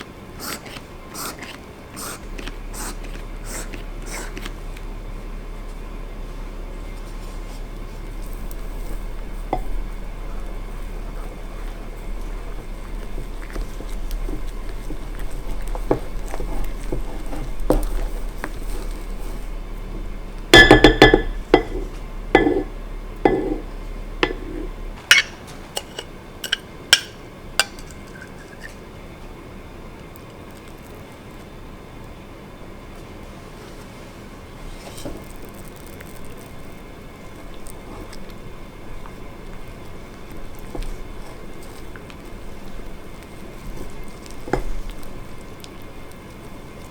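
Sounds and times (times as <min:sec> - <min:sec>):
soft rustling and scraping: 0:05.6 - 0:20.2, 0:33.0 - 0:46.9
utensil clinking against bowl: 0:20.6 - 0:22.7, 0:23.3 - 0:28.7.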